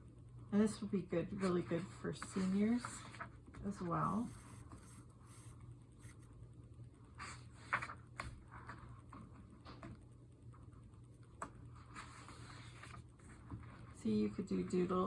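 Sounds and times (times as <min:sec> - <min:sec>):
low steady hum: 0:00.0 - 0:15.0
paper pages rustling: 0:07.2 - 0:10.0, 0:11.4 - 0:14.0.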